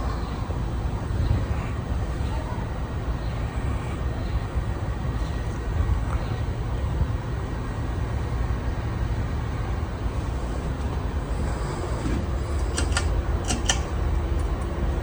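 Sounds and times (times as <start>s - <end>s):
ceiling fan low rumble: 0.0s - 15.0s
sharp clicks: 12.5s - 14.8s.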